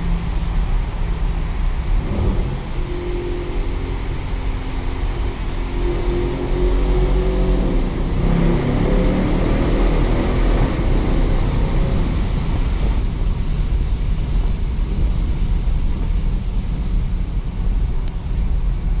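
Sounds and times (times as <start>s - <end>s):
car engine rumbling in a tunnel: 0.0s - 19.0s.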